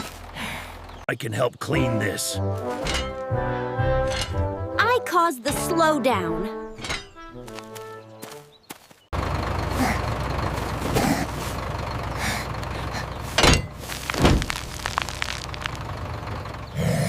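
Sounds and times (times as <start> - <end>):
low mechanical rumble: 9.2 - 17.0
faint clunks: 13.3 - 14.5
loud thuds: 13.3 - 15.8.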